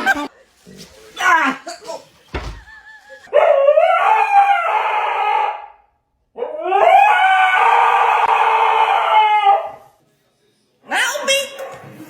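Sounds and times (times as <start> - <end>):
dog howling: 6.4 - 9.8.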